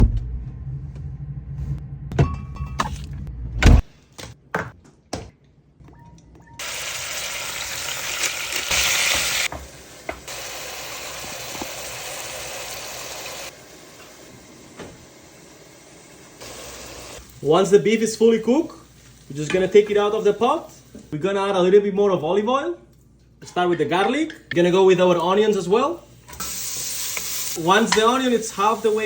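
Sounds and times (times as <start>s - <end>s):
low hum: 0.0s - 3.9s
meat sizzling in hot oil: 6.6s - 20.4s, 26.3s - 29.0s.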